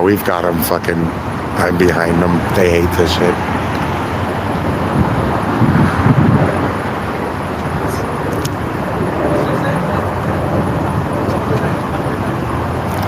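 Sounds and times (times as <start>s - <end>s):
road traffic noise: 0.0s - 13.0s.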